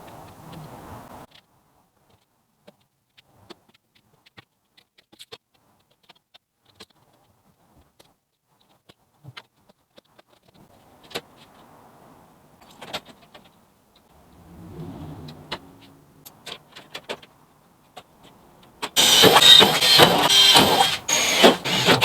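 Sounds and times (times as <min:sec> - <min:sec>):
low hum: 0:14.2 - 0:16.8.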